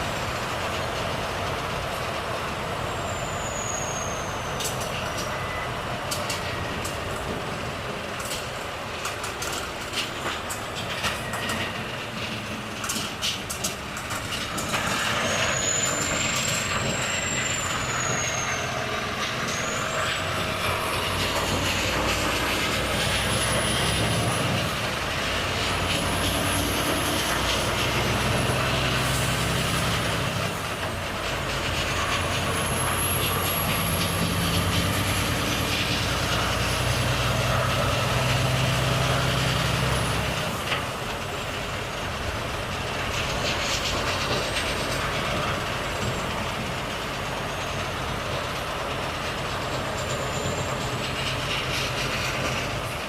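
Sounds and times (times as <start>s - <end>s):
diesel truck engine drone: 0.0s - 53.0s
road noise: 0.0s - 53.0s
high whistle: 3.0s - 4.7s, 15.4s - 20.3s.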